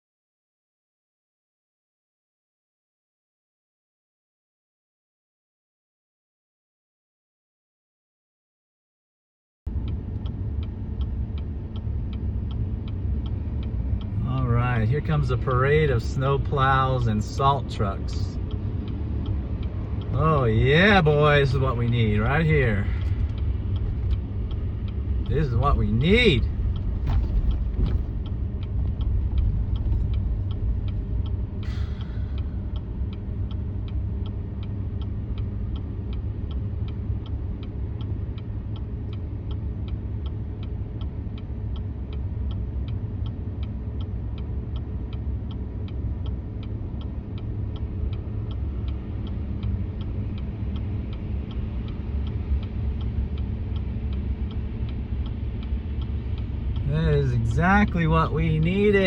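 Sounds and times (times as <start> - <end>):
truck engine and tyres rumbling: 9.7 - 59.0.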